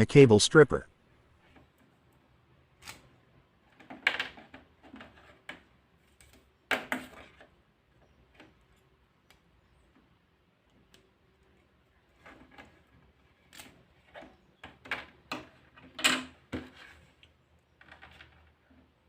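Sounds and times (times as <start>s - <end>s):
cable stripper clicks and scrapes: 2.8s - 3.1s.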